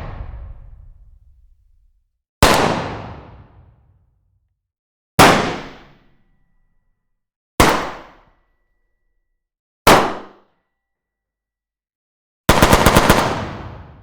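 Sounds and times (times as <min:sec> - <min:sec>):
gunshots indoors with echo: 0:00.0 - 0:04.0, 0:05.2 - 0:06.5, 0:07.6 - 0:08.8, 0:12.5 - 0:14.0.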